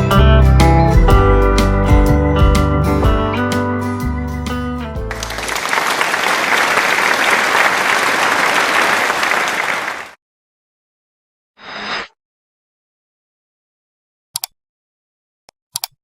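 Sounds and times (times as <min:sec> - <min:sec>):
country music with steel guitar: 0:00.0 - 0:05.1
audience applauding: 0:05.1 - 0:10.2.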